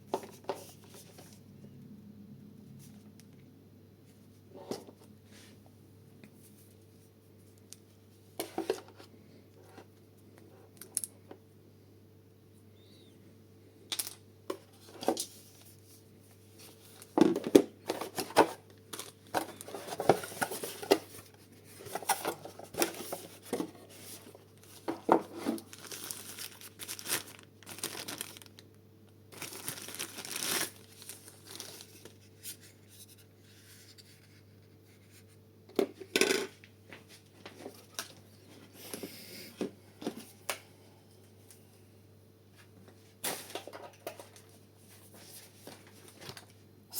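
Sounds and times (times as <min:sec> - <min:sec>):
faint steady hum: 0:00.0 - 0:46.9
paper and cardboard rustling: 0:14.7 - 0:28.6, 0:29.4 - 0:34.5.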